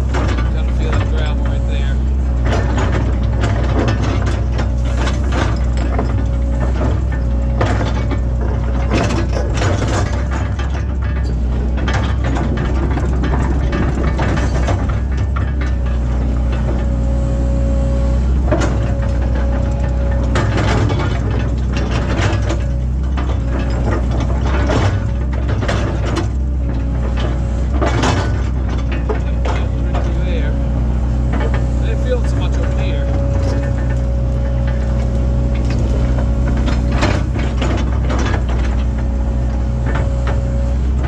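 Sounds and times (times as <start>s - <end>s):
machine knocks and clatter: 0.0s - 17.2s, 18.1s - 41.0s
excavator diesel engine: 0.0s - 41.0s.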